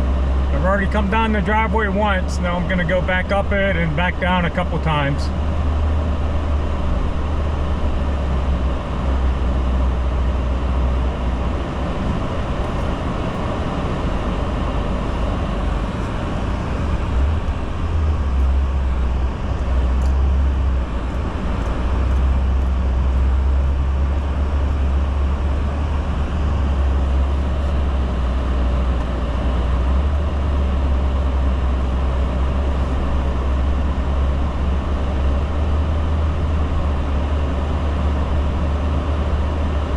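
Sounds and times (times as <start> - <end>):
low engine drone: 0.0 - 39.9
road noise: 0.0 - 39.9.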